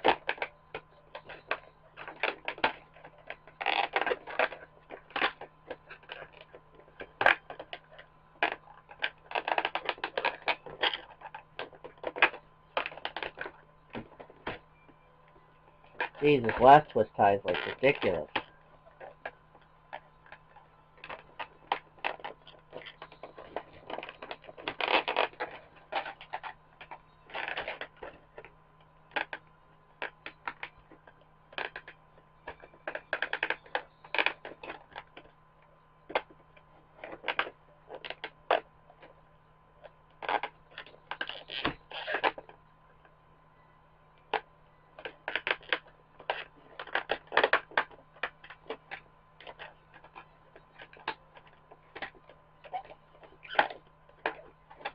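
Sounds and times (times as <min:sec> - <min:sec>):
faint steady hum: 0:00.0 - 0:54.9
plastic packaging clicks and crinkles: 0:00.0 - 0:54.9.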